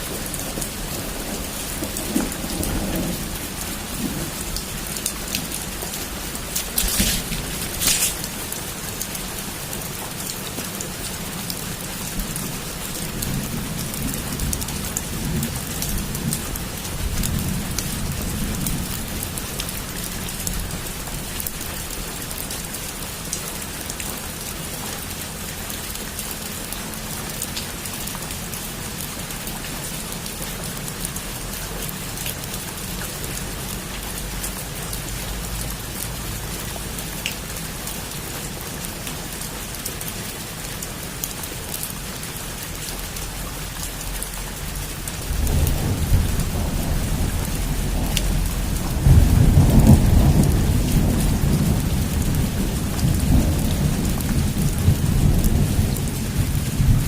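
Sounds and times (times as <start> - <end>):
sharp raindrop impacts: 0.0 - 25.6, 30.2 - 57.0
heavy rain falling: 0.0 - 57.0
low thunder rumble: 0.2 - 8.6, 45.2 - 57.0.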